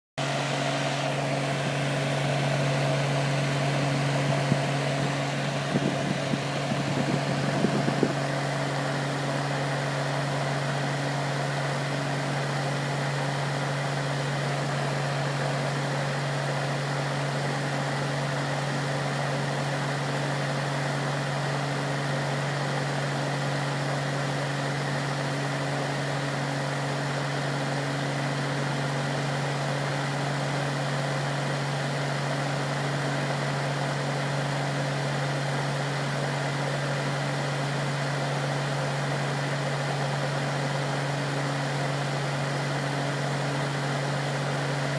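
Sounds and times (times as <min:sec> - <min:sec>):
desktop fan running: 0:00.2 - 0:44.9.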